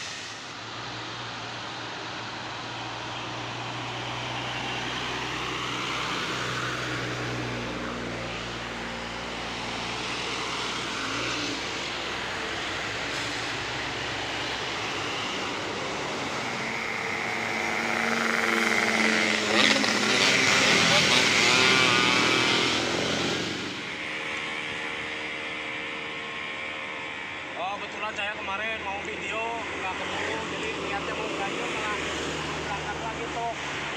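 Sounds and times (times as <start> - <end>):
heavy vehicle engine under load: 0.0 - 27.6
tyre and road noise: 0.0 - 33.9.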